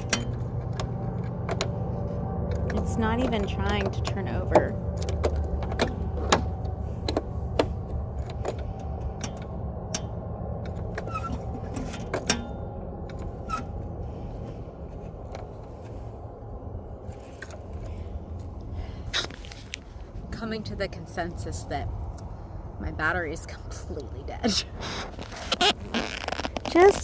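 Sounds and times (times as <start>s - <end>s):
clicks and knocks of controls: 0.0s - 13.7s
low steady rumble: 0.0s - 27.0s.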